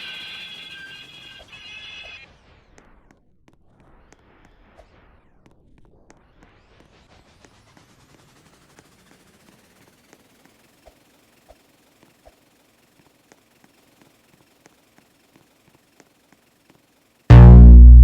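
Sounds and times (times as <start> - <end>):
soft low knocks: 17.3 - 18.0.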